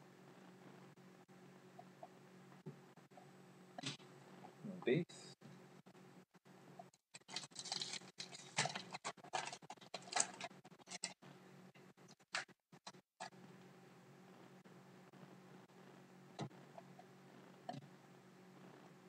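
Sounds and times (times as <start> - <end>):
cards and foil rustling: 7.1 - 11.2.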